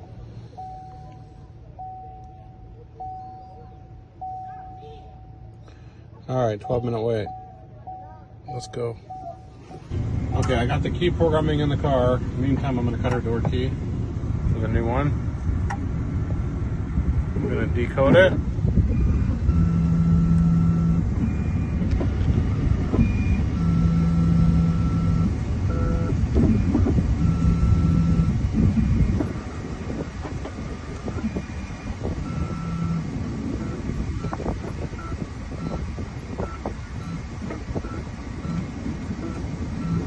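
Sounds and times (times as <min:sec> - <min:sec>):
low rumble: 0:09.0 - 0:40.0.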